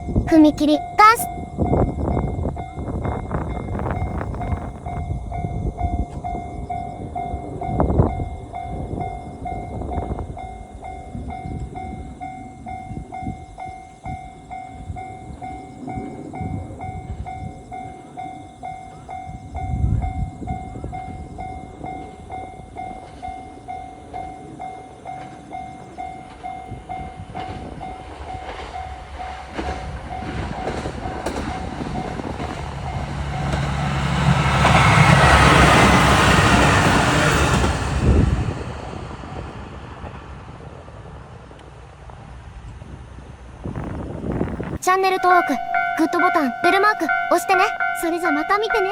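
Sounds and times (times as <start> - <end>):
railroad crossing bell ringing: 0.8 - 37.7, 45.1 - 48.9
diesel train rumble: 16.0 - 44.8.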